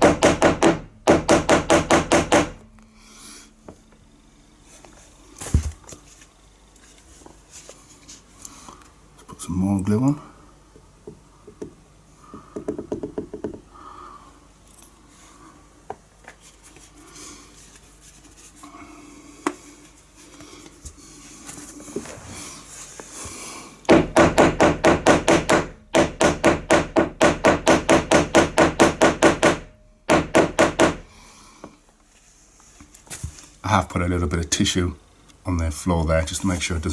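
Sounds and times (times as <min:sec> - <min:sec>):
hammer tapping wooden dowel: 0:00.0 - 0:02.6, 0:11.0 - 0:13.7, 0:23.9 - 0:31.0
faint handling sounds: 0:03.5 - 0:10.2, 0:14.6 - 0:23.5, 0:31.8 - 0:33.6.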